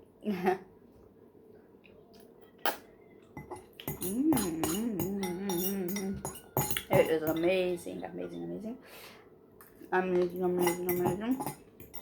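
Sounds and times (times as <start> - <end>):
woman humming while eating: 4.0 - 6.2.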